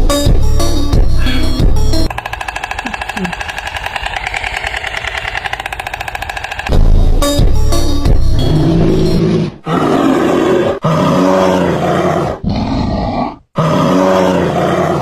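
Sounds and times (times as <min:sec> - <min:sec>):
animal deep loud calls: 0:02.1 - 0:06.8, 0:08.5 - 0:15.0.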